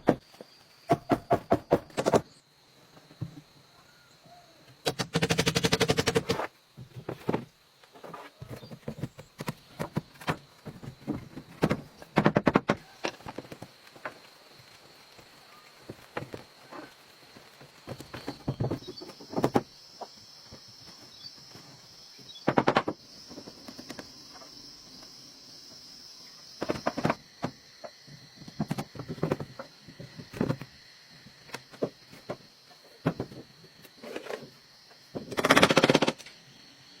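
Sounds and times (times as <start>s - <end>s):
faint high-pitched hiss: 2.3s - 4.9s, 12.8s - 35.4s.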